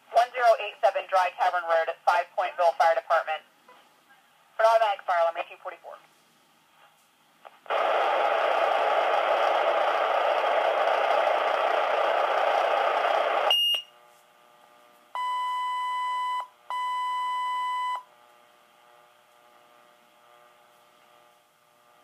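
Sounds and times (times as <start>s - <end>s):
radio static hissing: 0.1s - 3.5s, 6.7s - 13.5s
long steady beeps: 15.2s - 18.1s.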